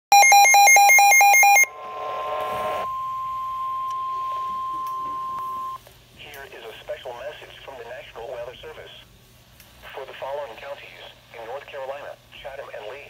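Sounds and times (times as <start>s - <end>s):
steady warning alarm tone: 0.1s - 5.8s
electronic two-pitch warble: 0.2s - 5.8s.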